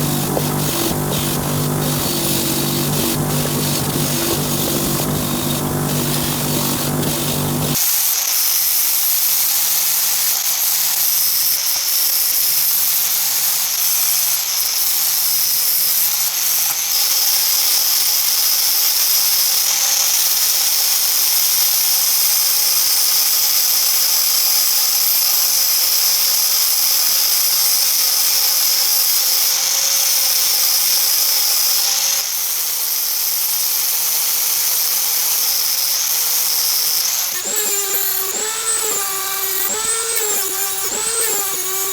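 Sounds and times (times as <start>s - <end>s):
rotary power tool whining: 0.0s - 41.9s.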